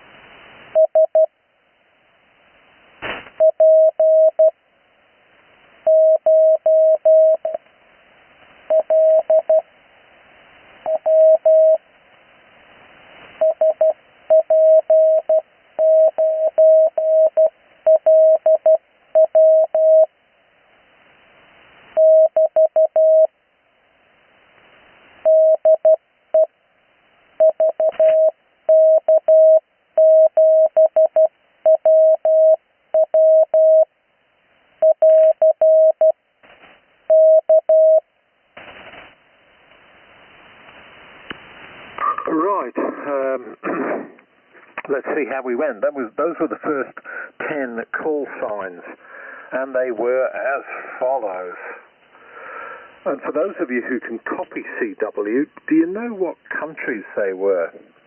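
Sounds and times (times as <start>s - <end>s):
radio band hiss: 2.9s - 3.4s, 38.6s - 58.0s
morse code tone: 3.4s - 4.5s, 5.9s - 7.6s, 8.7s - 9.6s, 10.9s - 11.8s, 13.4s - 20.1s, 22.0s - 23.3s, 25.3s - 26.5s, 27.4s - 33.9s, 34.8s - 36.1s, 37.1s - 38.0s.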